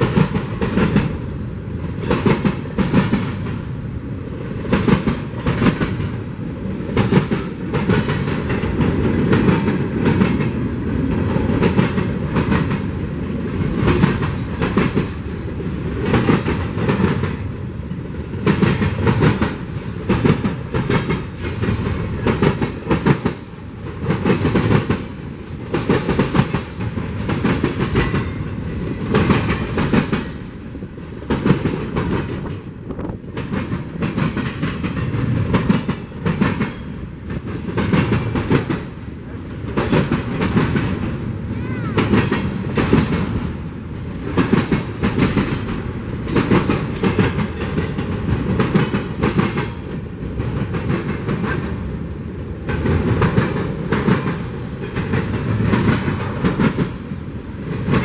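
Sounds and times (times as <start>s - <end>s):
train wheels clattering over rail joints: 0.0s - 3.6s, 18.3s - 41.2s, 42.0s - 51.9s, 52.6s - 58.0s
train rumble: 0.0s - 58.0s.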